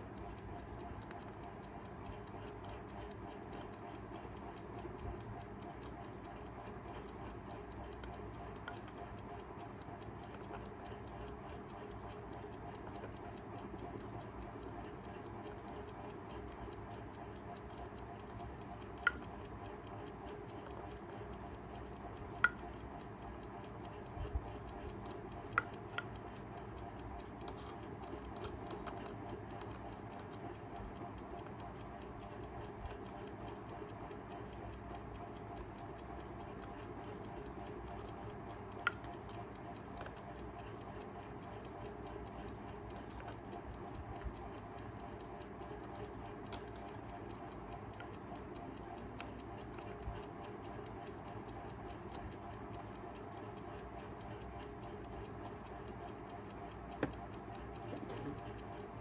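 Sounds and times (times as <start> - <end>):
alarm clock ticking: 0.0 - 59.0
sharp clock clicks: 0.0 - 59.0.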